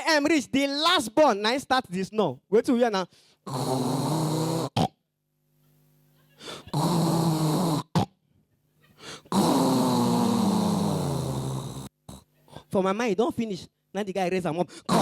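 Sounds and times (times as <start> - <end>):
person imitating snoring: 3.4 - 5.0, 6.4 - 8.2, 9.1 - 12.3.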